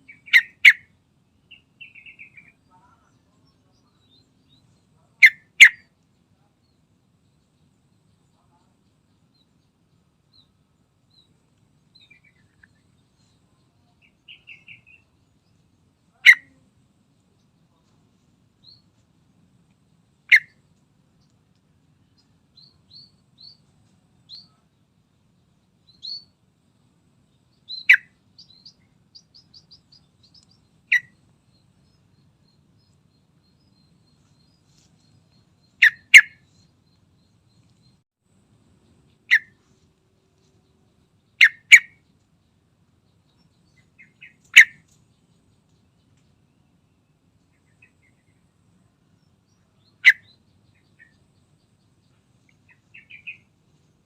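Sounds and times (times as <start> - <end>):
bird short sharp calls: 0.0 - 0.9, 35.8 - 36.5
faint high chirps: 0.0 - 19.0, 19.6 - 24.8, 25.7 - 38.0, 38.6 - 53.9.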